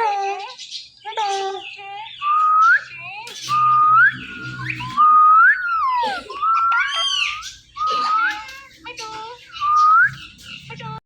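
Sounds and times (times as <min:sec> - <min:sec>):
parrot whistling: 0:02.2 - 0:08.7, 0:09.5 - 0:10.3.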